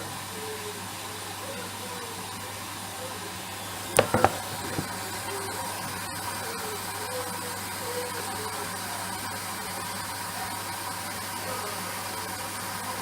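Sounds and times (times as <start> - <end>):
washing machine hissing: 0.0 - 13.0
sharp knocks: 4.0 - 4.9.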